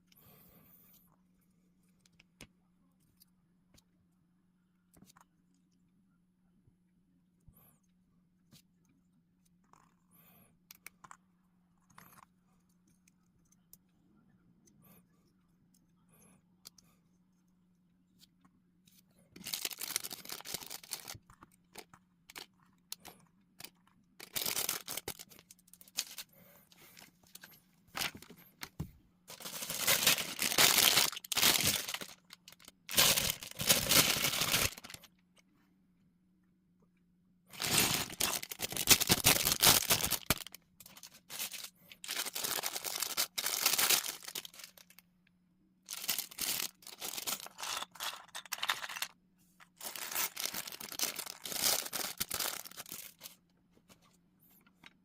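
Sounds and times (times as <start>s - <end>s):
plastic bags torn and crinkled: 19.4s - 21.2s, 21.8s - 26.3s, 29.3s - 35.1s, 37.5s - 45.0s, 45.9s - 53.4s.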